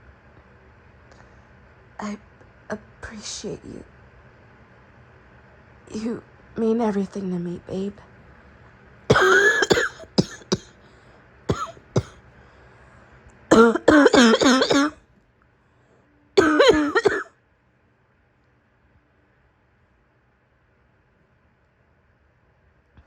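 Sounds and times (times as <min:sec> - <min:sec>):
woman coughing: 0:09.1 - 0:10.7, 0:11.5 - 0:12.2, 0:13.5 - 0:15.0, 0:16.4 - 0:17.3.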